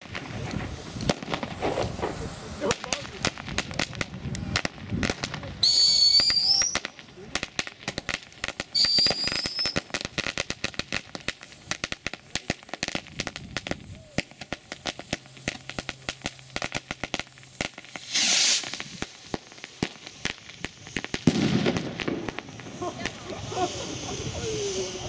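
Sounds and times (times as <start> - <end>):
firecrackers banging and crackling: 0.0 - 25.0
short high whistle: 5.6 - 6.8, 18.0 - 18.8
loud hissing whoosh: 15.2 - 25.0.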